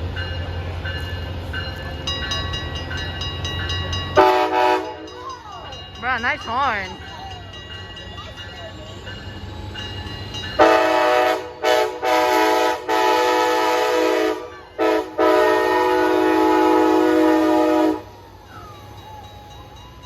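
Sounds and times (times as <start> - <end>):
train horn blasts: 4.2 - 5.2, 10.6 - 18.2.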